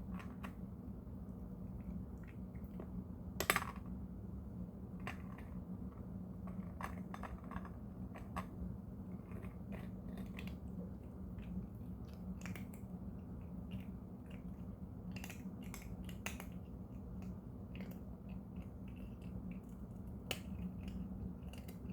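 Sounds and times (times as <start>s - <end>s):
cat crunching a treat: 9.2s - 21.9s.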